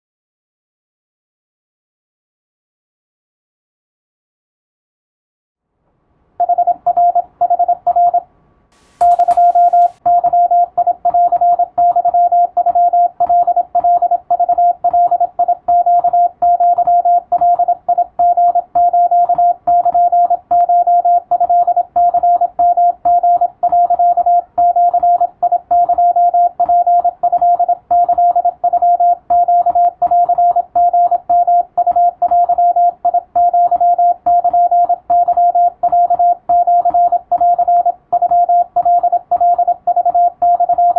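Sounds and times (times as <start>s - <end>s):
short click: 8.8s - 10.0s
morse code tone: 8.8s - 11.6s.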